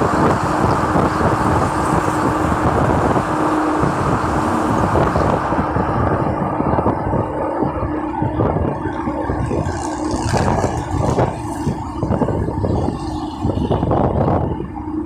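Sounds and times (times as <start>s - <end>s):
low hum: 0.0s - 15.0s
passing highway traffic: 0.0s - 15.0s.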